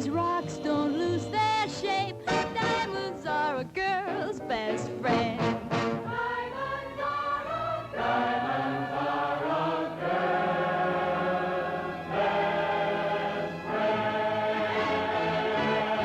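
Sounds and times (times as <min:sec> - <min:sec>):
orchestral film music: 0:00.0 - 0:16.0
choir singing held chords: 0:04.1 - 0:16.0.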